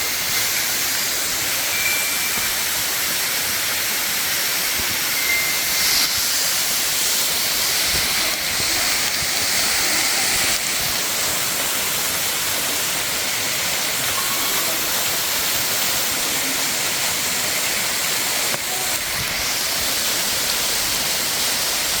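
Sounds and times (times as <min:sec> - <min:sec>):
waterfall rushing: 0:00.0 - 0:22.0.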